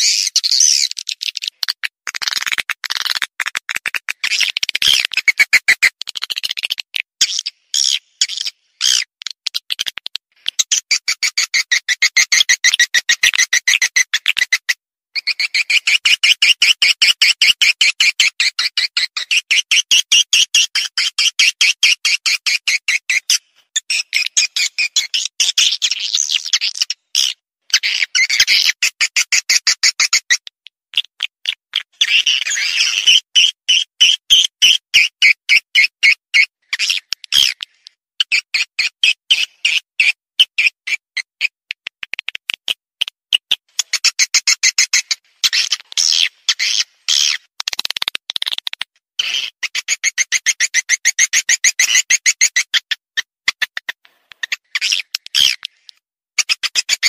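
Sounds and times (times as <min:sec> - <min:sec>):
high bird chirps: 0:00.0 - 0:03.2, 0:15.2 - 0:30.4, 0:32.0 - 0:41.0, 0:43.8 - 0:47.5.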